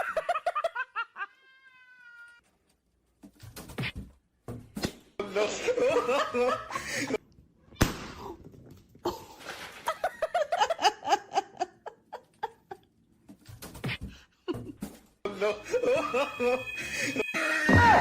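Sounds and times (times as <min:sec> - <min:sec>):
people laughing: 0:05.2 - 0:07.2, 0:09.9 - 0:12.9, 0:15.4 - 0:17.2.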